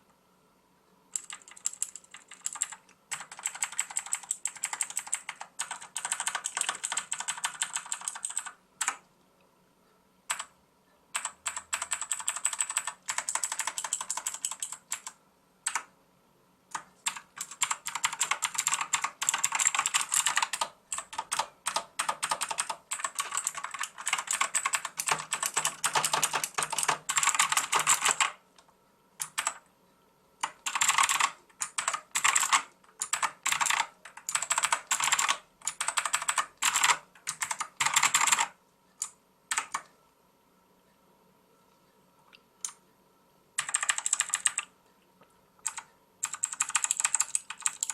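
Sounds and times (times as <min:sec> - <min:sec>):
mechanical keyboard typing: 0:01.1 - 0:09.0, 0:10.3 - 0:10.6, 0:11.2 - 0:15.9, 0:16.7 - 0:28.4, 0:29.2 - 0:29.6, 0:30.4 - 0:39.9, 0:43.6 - 0:44.7, 0:45.6 - 0:47.9.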